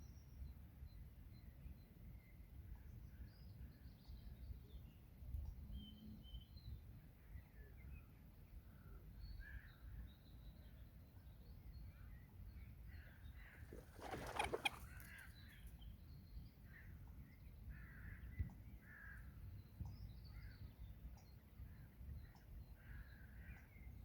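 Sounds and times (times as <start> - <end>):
bird calls and chirps: 12.9 - 24.0.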